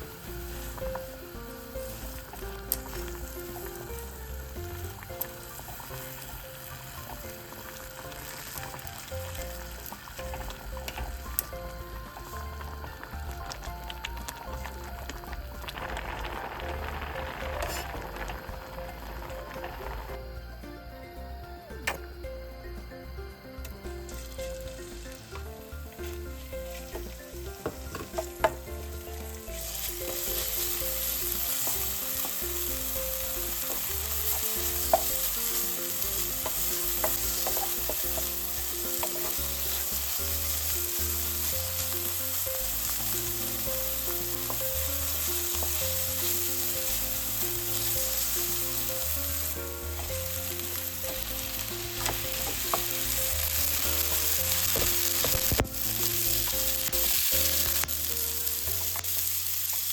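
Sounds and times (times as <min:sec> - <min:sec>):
stirring clicks: 0:00.0 - 0:20.3, 0:23.6 - 0:59.9
food sizzling in a pan: 0:00.0 - 0:59.9
utensil tapping: 0:24.4 - 0:40.0.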